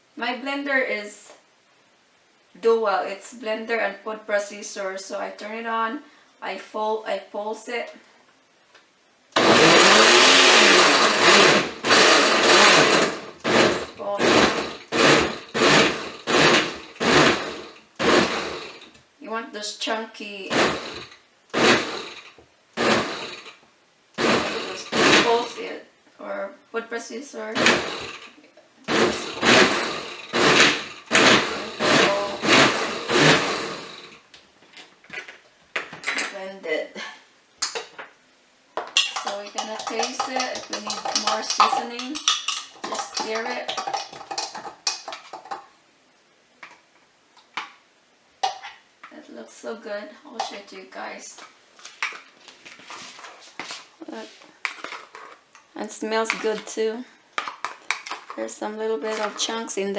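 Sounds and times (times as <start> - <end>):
blender pulsing: 9.4 - 18.9, 20.5 - 23.6, 24.2 - 25.7, 27.6 - 34.2, 39.1 - 45.5
food processor chopping: 9.4 - 18.9, 20.5 - 23.6, 24.2 - 25.7, 27.6 - 28.3, 28.9 - 34.2, 39.0 - 45.6.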